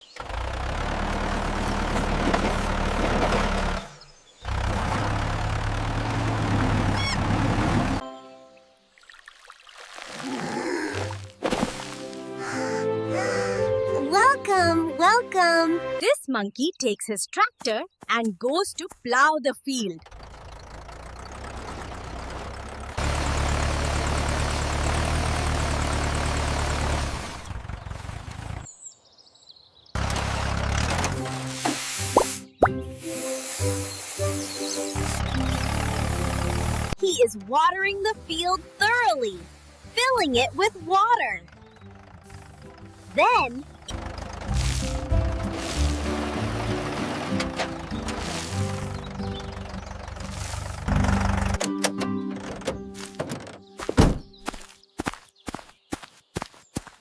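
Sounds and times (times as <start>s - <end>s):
tractor engine running: 0.0s - 8.0s, 19.7s - 28.7s, 30.0s - 55.2s.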